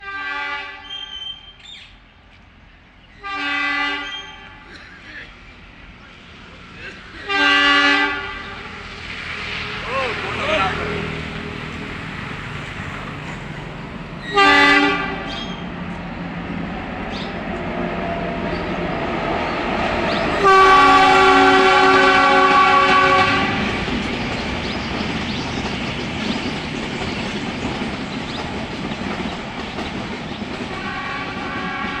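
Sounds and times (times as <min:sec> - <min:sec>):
loud train horn: 0:00.0 - 0:01.6, 0:03.2 - 0:04.8, 0:07.1 - 0:08.9, 0:14.2 - 0:15.6, 0:19.8 - 0:23.9, 0:30.7 - 0:32.0
train rumble and wheel clatter: 0:00.0 - 0:32.0.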